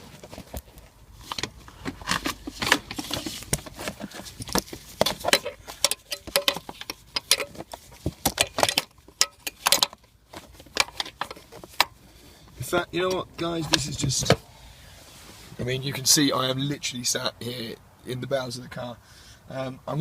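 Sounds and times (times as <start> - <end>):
hand tools clinking on metal: 5.3 - 7.6.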